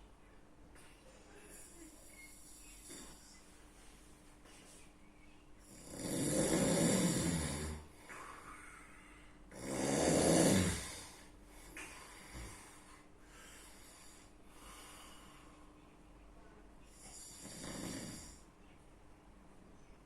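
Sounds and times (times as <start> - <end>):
quiet breathing: 0.8 - 18.8
person snoring loudly: 5.7 - 7.9, 9.5 - 11.2, 17.1 - 18.4.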